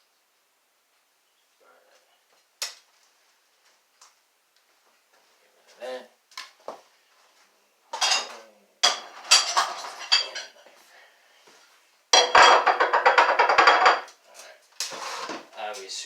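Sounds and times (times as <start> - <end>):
metal cutlery and dishes clattering: 8.0 - 10.6, 12.2 - 14.2.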